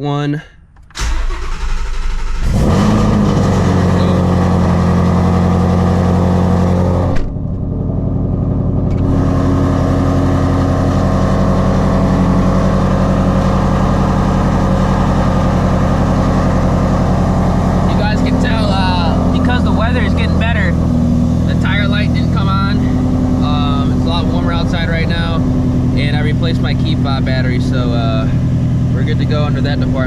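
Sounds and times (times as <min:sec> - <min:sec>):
car engine idling loud: 0:01.0 - 0:30.0.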